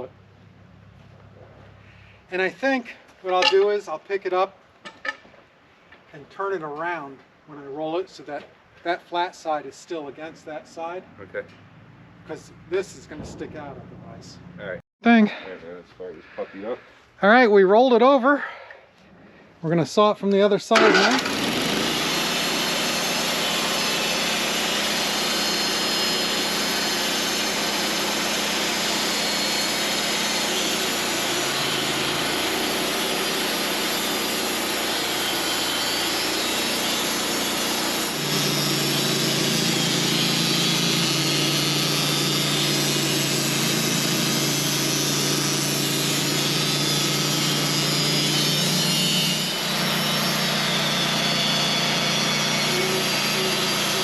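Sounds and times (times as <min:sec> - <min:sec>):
sawmill sawing log: 0:20.7 - 0:54.0.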